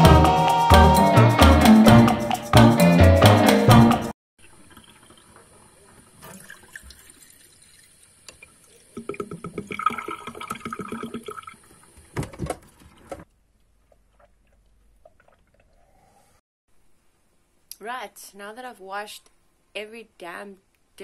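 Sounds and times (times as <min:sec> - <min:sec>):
water running into sink: 0:04.4 - 0:12.5.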